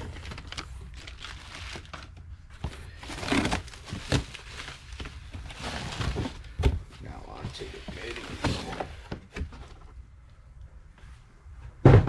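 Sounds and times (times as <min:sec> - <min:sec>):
packaging crinkling and rustling: 0:00.0 - 0:09.8.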